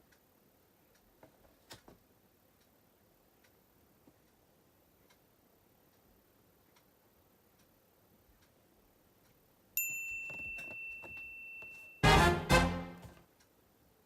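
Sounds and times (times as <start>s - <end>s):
tinny electronic jingle: 11.9s - 13.2s.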